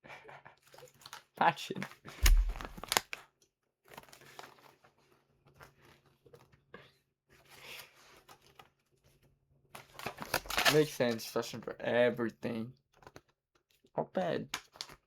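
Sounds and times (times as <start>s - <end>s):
clicks: 2.2s - 2.8s
heavy thump: 2.2s - 2.8s
paper rustling and crinkling: 2.2s - 3.0s, 9.8s - 11.2s.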